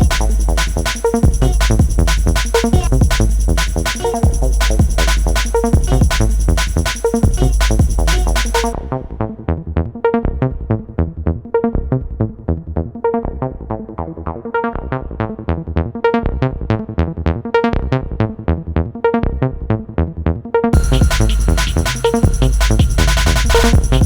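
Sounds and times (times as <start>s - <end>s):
synthesizer electronic music: 0.0s - 10.2s, 20.7s - 24.0s.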